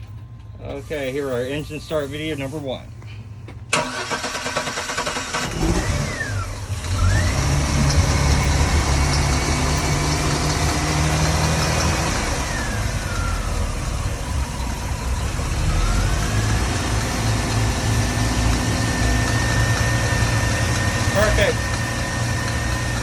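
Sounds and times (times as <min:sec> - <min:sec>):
engine whine: 0:00.0 - 0:23.0
boat engines running: 0:06.5 - 0:23.0.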